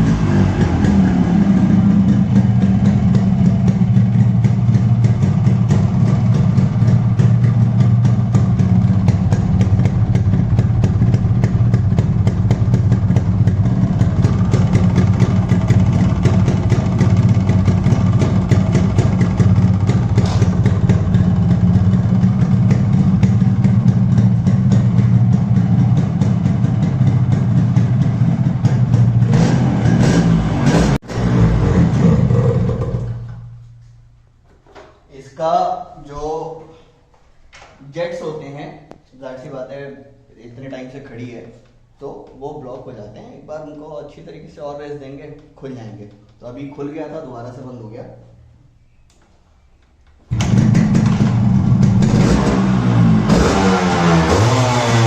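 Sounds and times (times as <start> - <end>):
two-stroke motorcycle engine idling: 0.0 - 29.3, 50.3 - 53.4.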